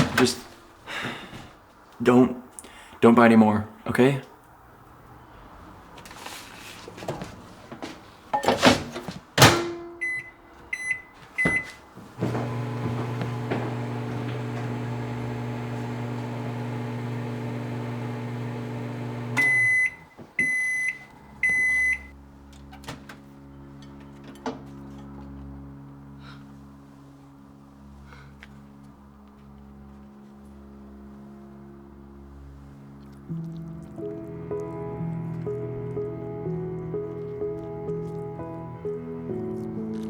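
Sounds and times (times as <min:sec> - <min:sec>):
microwave end beeps: 0:09.4 - 0:22.1
microwave keypad beeps: 0:10.0 - 0:11.8, 0:19.4 - 0:22.1
microwave oven humming: 0:12.2 - 0:22.1.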